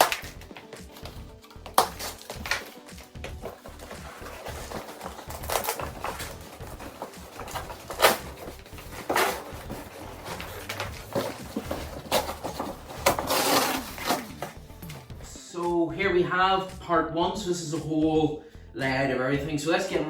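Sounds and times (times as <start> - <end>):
knocks and scrapes of parts: 0.0 - 15.1
packaging rustling: 0.0 - 15.1.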